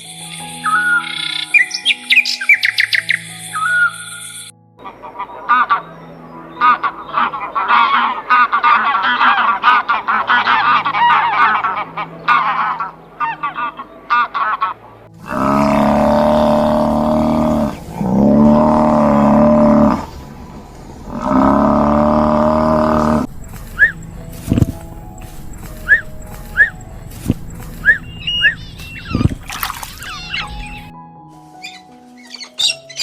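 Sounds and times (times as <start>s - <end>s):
geese honking: 4.8s - 20.2s, 21.1s - 30.9s
farm animal low calls: 15.2s - 20.1s, 21.1s - 24.8s, 25.8s - 29.4s.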